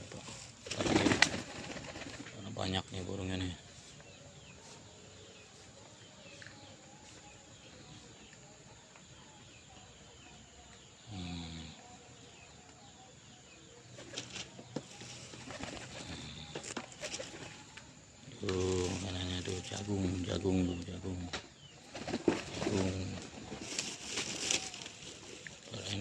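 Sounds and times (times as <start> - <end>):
pigeons chirping: 0.0 - 9.2, 10.8 - 26.0
wings flapping: 0.5 - 2.4, 15.2 - 17.6, 21.9 - 25.8.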